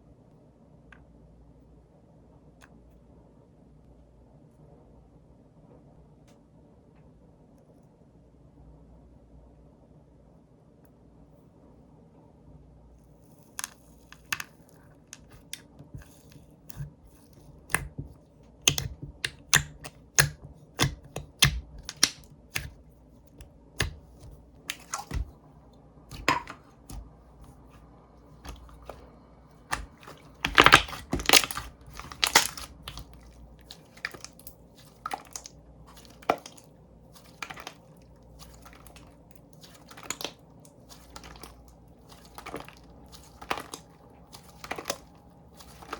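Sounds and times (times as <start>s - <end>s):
slime clicking and popping: 17.5s - 22.8s, 23.8s - 25.3s, 26.1s - 27.1s, 29.7s - 36.6s, 37.2s - 37.8s, 38.4s - 45.9s.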